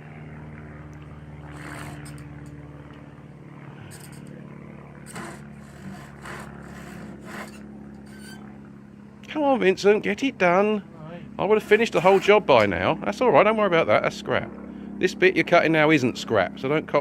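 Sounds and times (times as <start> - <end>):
low mechanical hum: 0.0 - 17.0
hand saw cutting wood: 1.5 - 2.5, 3.9 - 4.3, 5.0 - 8.4, 11.5 - 12.7.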